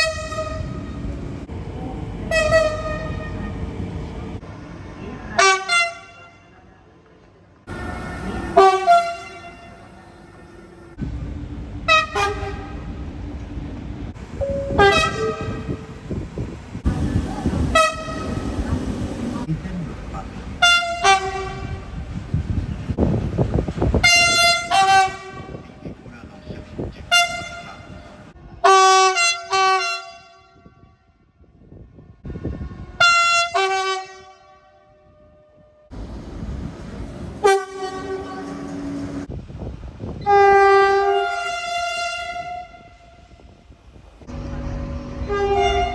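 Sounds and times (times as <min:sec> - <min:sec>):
train horn blasts: 0:00.0 - 0:01.2, 0:02.2 - 0:03.8, 0:07.7 - 0:11.0, 0:11.9 - 0:12.9, 0:14.2 - 0:19.5, 0:20.6 - 0:21.9, 0:27.1 - 0:31.0, 0:32.6 - 0:35.7, 0:37.4 - 0:39.3, 0:40.2 - 0:43.4, 0:44.3 - 0:45.9
loud low train rumble: 0:00.0 - 0:34.3, 0:35.0 - 0:45.9.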